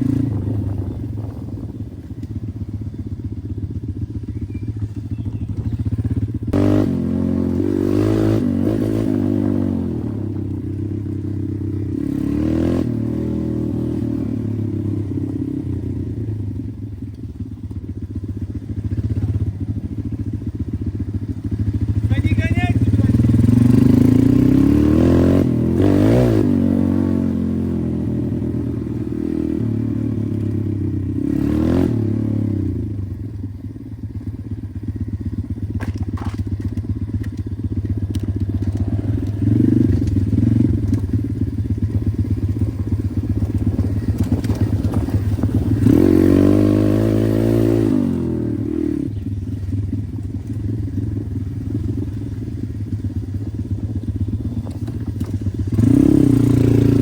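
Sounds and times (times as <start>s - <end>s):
motorbike engine revving: 0.0s - 16.9s, 17.9s - 57.0s
rattling and clicks: 35.7s - 41.2s, 43.3s - 45.8s.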